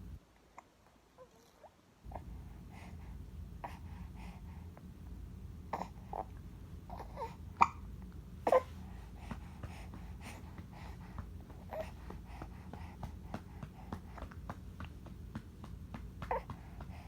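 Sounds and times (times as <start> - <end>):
baby cooing: 16.3 - 16.6.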